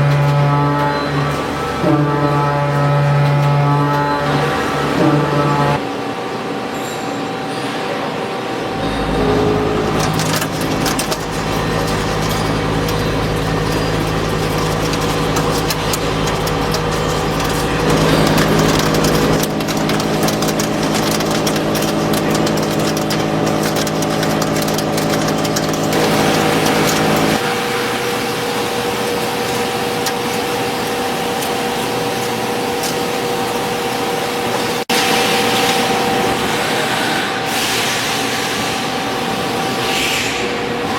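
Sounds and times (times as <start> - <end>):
machine spindle whine and hum: 0.0 - 40.9
crackle of metal cutting: 8.8 - 36.0.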